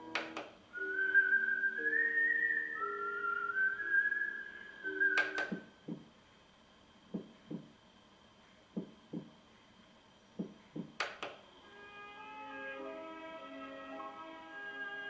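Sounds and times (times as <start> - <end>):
switch clicks: 0.1 - 0.5, 10.4 - 11.4
heartbeat thumps: 5.5 - 6.1, 7.1 - 7.8, 8.8 - 9.4, 10.4 - 11.0.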